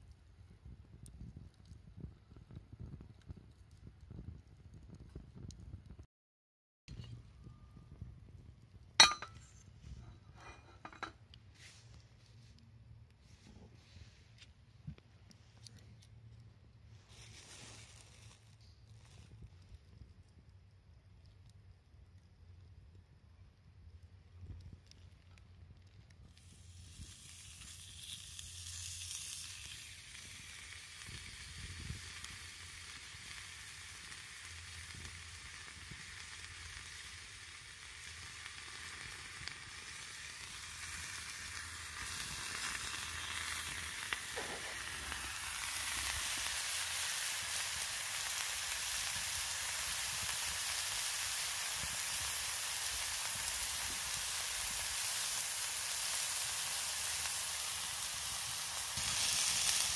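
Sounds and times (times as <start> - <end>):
food sizzling in a frying pan: 9.0 - 11.8, 17.0 - 19.6, 26.2 - 59.9.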